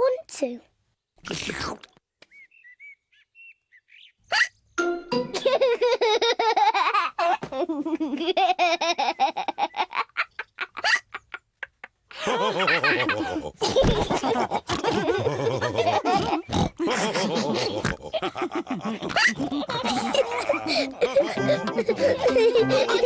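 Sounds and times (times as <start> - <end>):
cartoon pigs laughing and snorting: 5.3 - 23.0.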